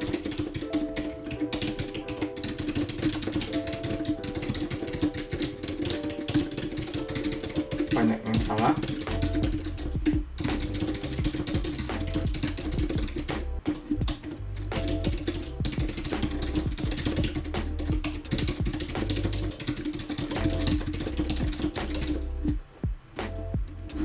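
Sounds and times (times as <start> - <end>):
keyboard typing: 0.0 - 24.0
background music with bass line: 8.0 - 19.6, 20.4 - 24.0.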